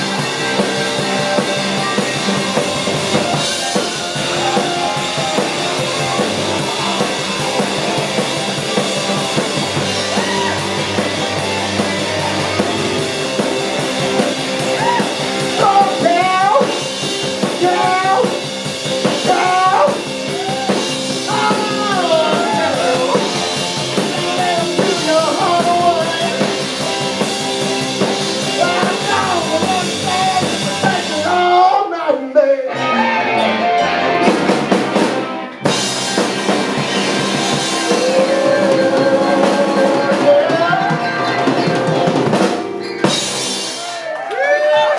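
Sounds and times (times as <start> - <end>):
rock and roll band playing: 0.0 - 44.9
person singing: 14.6 - 18.5, 19.2 - 27.2, 28.4 - 34.0, 37.1 - 42.2.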